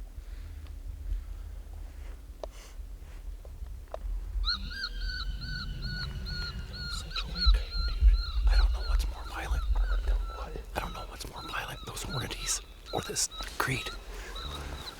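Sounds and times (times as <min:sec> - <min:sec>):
low rumble: 0:00.0 - 0:11.4
high-pitched distress cry call: 0:09.3 - 0:14.9.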